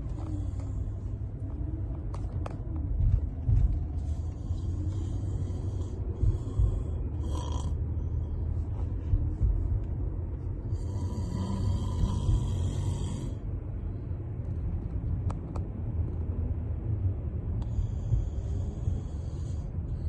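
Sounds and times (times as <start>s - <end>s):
heavy low rumble: 0.0s - 20.0s
person snoring: 4.6s - 7.8s, 10.7s - 13.4s.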